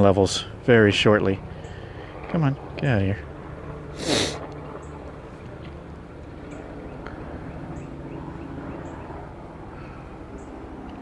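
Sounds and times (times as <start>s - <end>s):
breathy puff: 4.0s - 4.4s.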